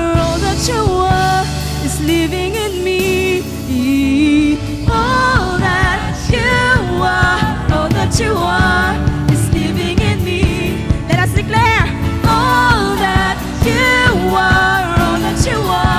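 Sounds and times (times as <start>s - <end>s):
worship band playing: 0.0s - 15.9s
drum hits: 4.8s - 15.9s.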